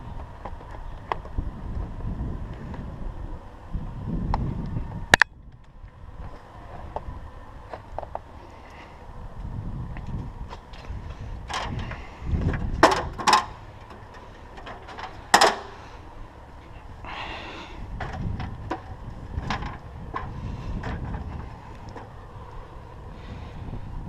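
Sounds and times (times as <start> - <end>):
steady low rumble: 0.0 - 24.0.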